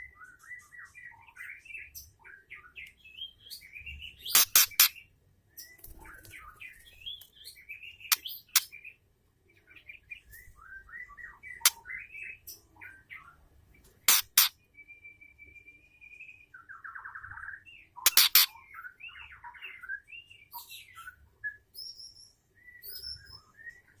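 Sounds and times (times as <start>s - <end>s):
bird chirping and warbling: 0.0s - 24.0s
sharp clicking bird calls: 0.2s - 3.0s, 4.2s - 8.9s, 11.4s - 12.6s, 13.8s - 14.6s, 18.0s - 19.6s.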